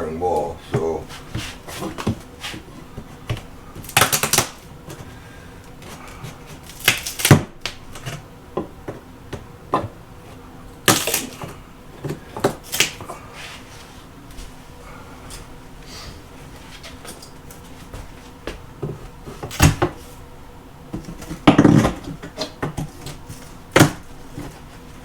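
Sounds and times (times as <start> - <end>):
wood paneling being pried off: 3.2 - 5.0, 5.8 - 8.8, 10.9 - 13.1, 19.4 - 20.0.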